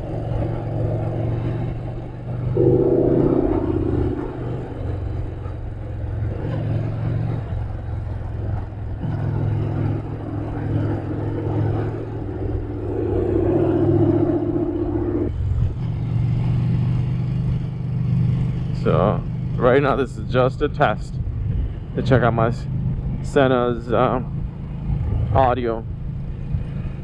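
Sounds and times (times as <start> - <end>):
wind and road rush: 0.0 - 2.7, 3.4 - 27.0
motorcycle engine running: 0.0 - 20.2.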